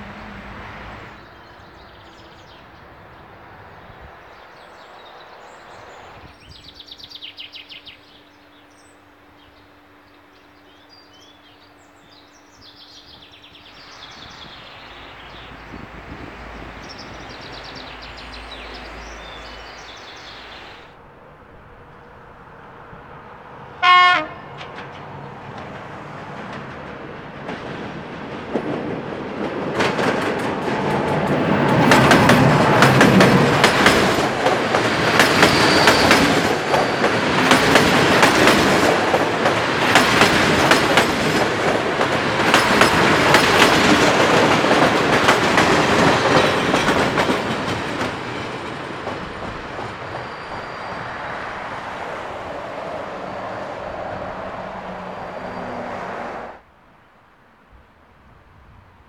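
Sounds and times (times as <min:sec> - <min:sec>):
train running by: 0:00.0 - 0:56.7
train horn blast: 0:23.8 - 0:24.9
wheels clicking over rail joints: 0:24.5 - 0:51.2.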